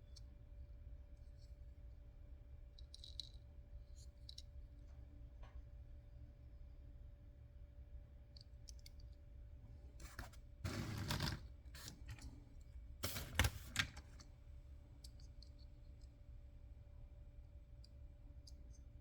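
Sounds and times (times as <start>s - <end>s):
rustling scrape: 10.0s - 12.3s.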